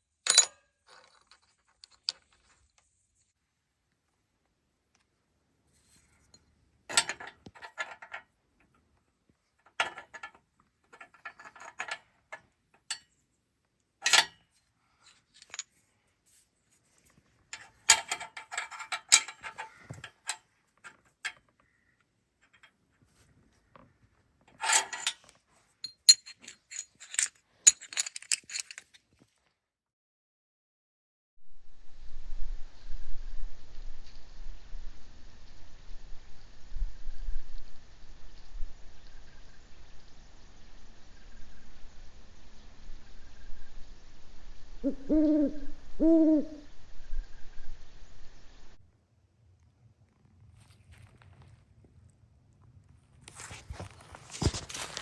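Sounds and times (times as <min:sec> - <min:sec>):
metallic clinking and clattering: 0:00.2 - 0:02.9, 0:09.7 - 0:13.1, 0:14.0 - 0:14.4, 0:15.3 - 0:15.8, 0:24.5 - 0:29.0.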